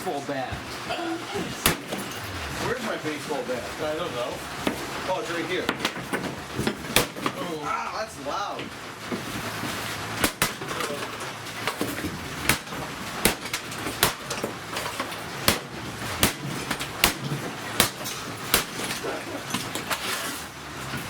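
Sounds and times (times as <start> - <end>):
steady noise: 0.0 - 19.5
bat striking vacuum cleaner: 1.6 - 2.3, 6.6 - 7.4, 11.7 - 14.5, 15.4 - 19.0.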